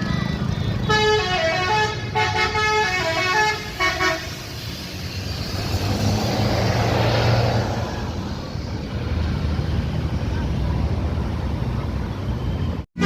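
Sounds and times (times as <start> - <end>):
bus engine and tyres passing: 0.0 - 13.0
musical bus horn: 0.8 - 4.5.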